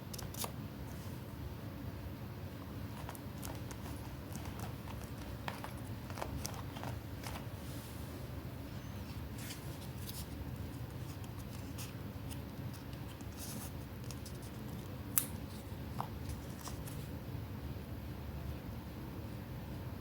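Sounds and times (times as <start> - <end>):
steady low hum: 0.0 - 20.0
paper rustling: 3.0 - 7.6, 9.2 - 17.1.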